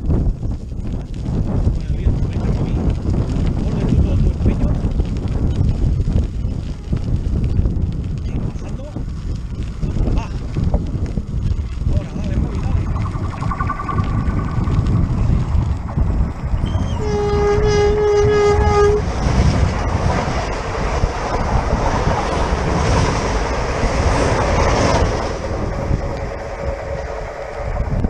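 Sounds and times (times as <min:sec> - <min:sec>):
wind buffeting microphone: 0:00.0 - 0:28.0
train horn blast: 0:16.9 - 0:19.1
train wheels rushing past: 0:18.2 - 0:28.0.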